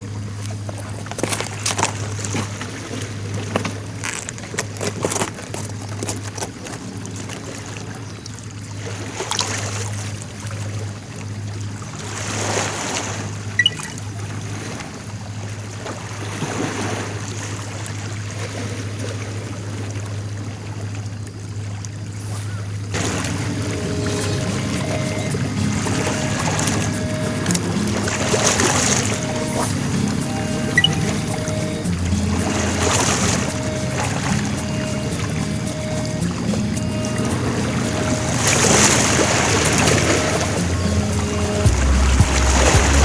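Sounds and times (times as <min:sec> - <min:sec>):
sea waves washing in: 0:22.1 - 0:43.0
low hum: 0:22.8 - 0:43.0.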